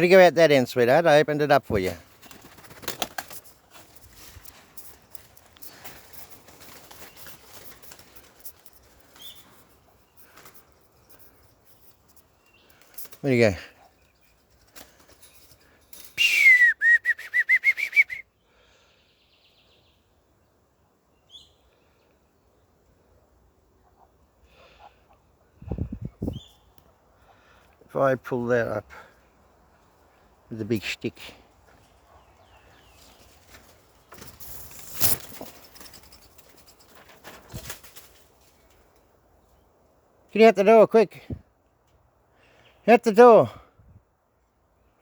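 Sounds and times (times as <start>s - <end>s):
rustling and scraping: 1.8s - 16.2s, 31.7s - 39.1s
kite whistling call: 16.2s - 18.2s
sharp clatter: 34.1s - 38.2s.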